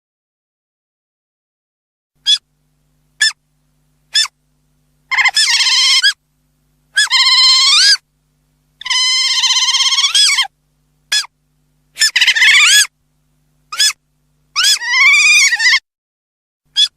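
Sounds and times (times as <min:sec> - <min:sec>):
otter chirping: 0:02.2 - 0:02.4, 0:03.2 - 0:03.4, 0:04.1 - 0:04.4, 0:05.1 - 0:06.2, 0:06.9 - 0:08.0, 0:08.8 - 0:10.5, 0:11.1 - 0:11.3, 0:12.0 - 0:12.9, 0:13.7 - 0:15.8
otter squealing: 0:05.1 - 0:06.2, 0:07.0 - 0:08.0, 0:08.8 - 0:10.5, 0:12.0 - 0:12.9, 0:13.7 - 0:14.0, 0:14.6 - 0:15.8.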